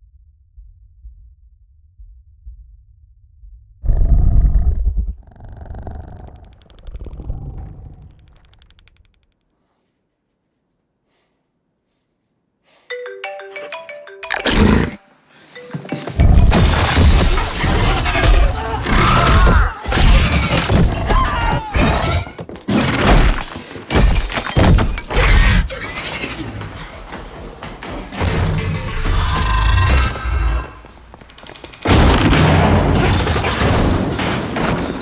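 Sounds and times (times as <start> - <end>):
film music: 12.9 - 16.7
stepped notes: 15.6 - 16.6
crashing and breaking: 16.1 - 29.9, 31.0 - 35.0
heavy crash: 28.0 - 35.0.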